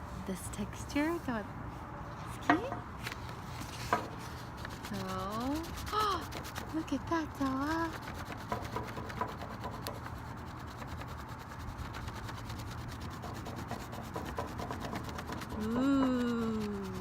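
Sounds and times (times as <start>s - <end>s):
crayon rubbing over paper: 4.4s - 17.0s.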